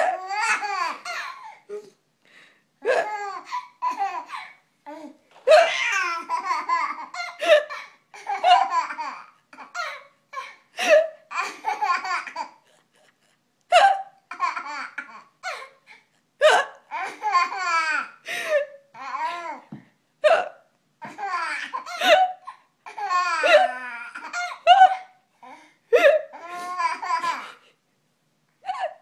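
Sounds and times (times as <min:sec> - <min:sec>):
baby laughing hard: 0:00.0 - 0:01.7, 0:02.8 - 0:19.7, 0:21.0 - 0:25.1, 0:26.0 - 0:27.6
woman hiccuping: 0:13.7 - 0:14.1, 0:20.2 - 0:20.6.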